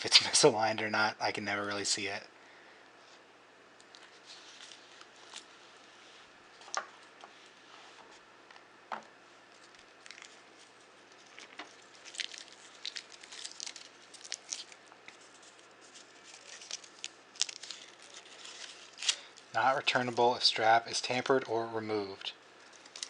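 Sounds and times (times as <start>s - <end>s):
packaging crinkling: 3.8s - 5.9s, 9.5s - 20.0s, 22.1s - 23.0s.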